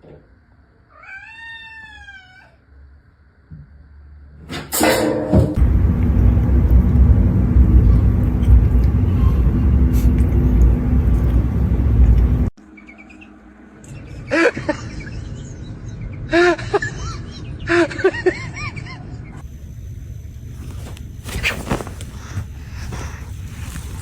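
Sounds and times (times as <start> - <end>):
loud low rumble: 5.5 - 12.5.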